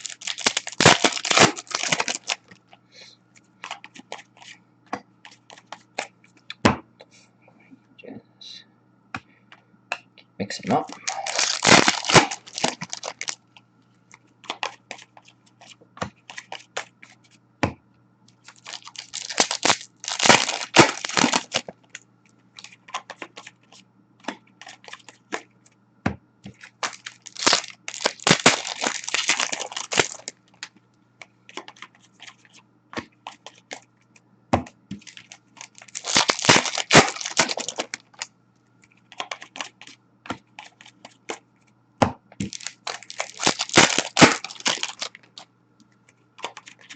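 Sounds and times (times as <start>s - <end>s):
foil wrappers tearing and crinkling: 0.0s - 2.5s, 10.9s - 13.4s, 18.5s - 21.7s, 26.6s - 30.3s, 35.0s - 38.3s, 42.4s - 45.4s.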